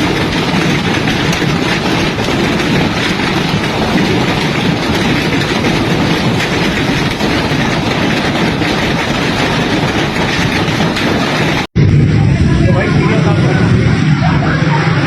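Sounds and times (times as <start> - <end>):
hailstones pelting hard surfaces: 0.0 - 11.7.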